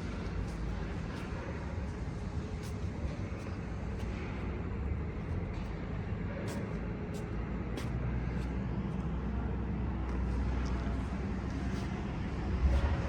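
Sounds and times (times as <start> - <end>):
diesel engine humming: 0.0 - 13.0.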